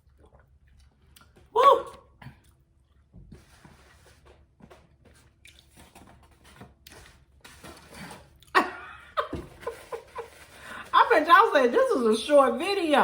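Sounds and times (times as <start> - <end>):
chewing and mouth sounds: 0.0 - 3.1, 5.4 - 5.9.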